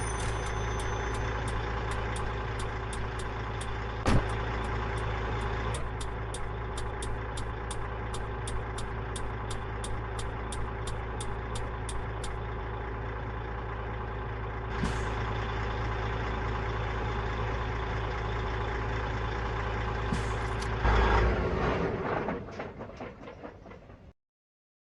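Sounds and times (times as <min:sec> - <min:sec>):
diesel engine idling: 0:00.0 - 0:24.0
high ticking: 0:00.2 - 0:12.4.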